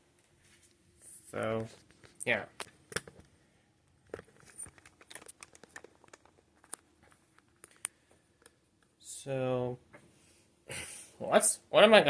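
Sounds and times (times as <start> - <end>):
small parts clicking and crinkling: 1.6 - 9.0.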